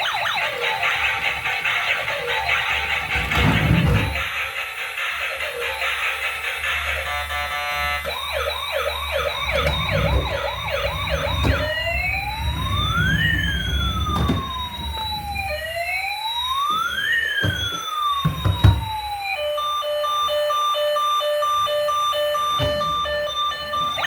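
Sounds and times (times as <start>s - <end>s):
toy siren yelping and wailing: 0.0s - 3.0s, 7.0s - 11.6s, 14.4s - 24.0s.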